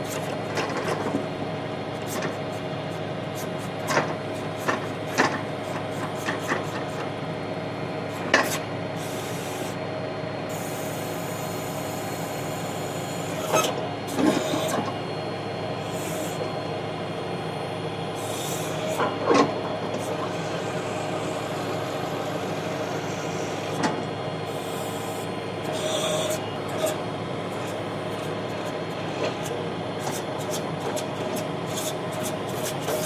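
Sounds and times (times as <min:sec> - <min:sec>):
backhoe clunks: 0:00.1 - 0:01.4, 0:03.8 - 0:07.0, 0:08.2 - 0:08.6, 0:19.0 - 0:20.4, 0:23.7 - 0:24.1, 0:32.1 - 0:33.0
steady whine: 0:00.4 - 0:33.0
tractor engine running: 0:10.8 - 0:33.0.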